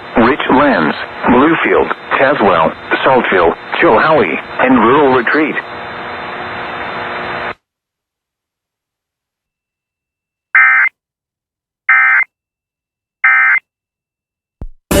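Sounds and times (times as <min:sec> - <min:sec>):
radio hiss: 0:00.0 - 0:05.8
digital squawk data tones: 0:11.9 - 0:12.3.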